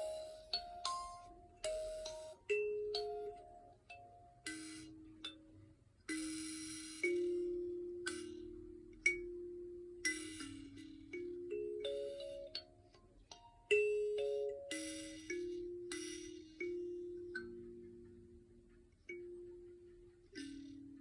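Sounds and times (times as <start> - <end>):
kalimba notes plucked: 7.0 - 18.3.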